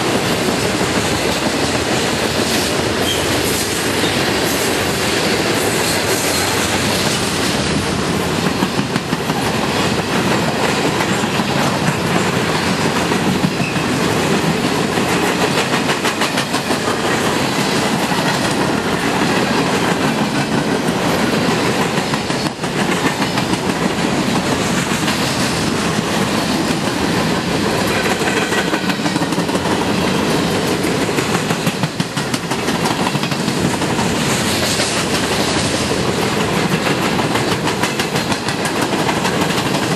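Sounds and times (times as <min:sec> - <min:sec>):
freight train cars rolling past: 0:00.0 - 0:39.9
wheels clicking over rail joints: 0:08.4 - 0:39.9.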